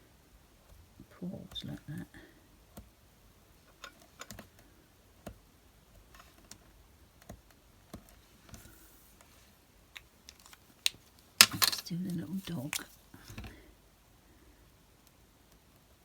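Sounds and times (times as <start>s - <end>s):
pens and card clicking on table: 10.0s - 13.0s.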